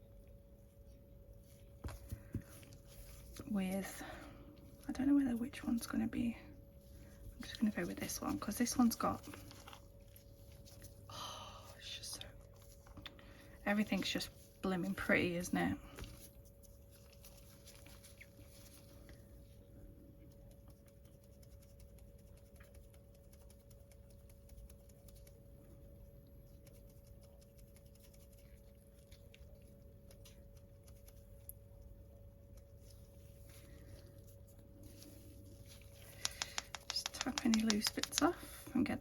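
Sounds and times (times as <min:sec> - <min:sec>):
faint steady hum: 0:00.0 - 0:39.0
faint light clicks: 0:36.1 - 0:38.3.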